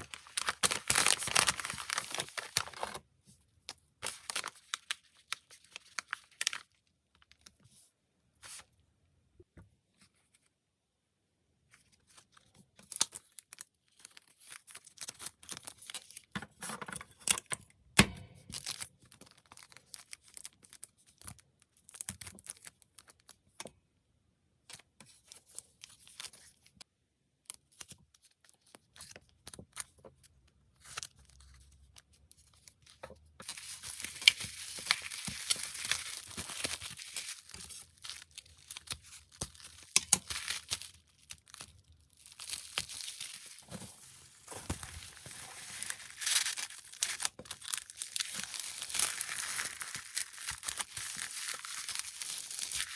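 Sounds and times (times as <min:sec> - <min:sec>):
plastic packaging crinkling and tearing: 0:00.0 - 0:03.0, 0:03.7 - 0:07.5, 0:12.1 - 0:17.5, 0:18.4 - 0:23.4, 0:30.8 - 0:52.9.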